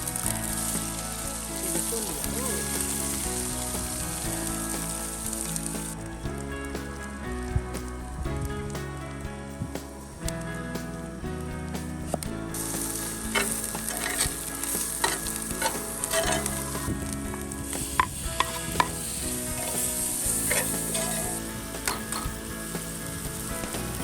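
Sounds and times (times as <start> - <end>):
food sizzling in a pan: 0.2 - 5.9, 12.6 - 24.0
utensil scraping a pan: 13.1 - 17.0, 17.8 - 22.4.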